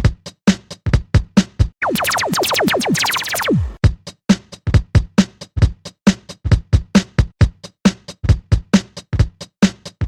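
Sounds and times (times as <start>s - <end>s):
electronic drum-machine beat: 1.8s - 3.8s.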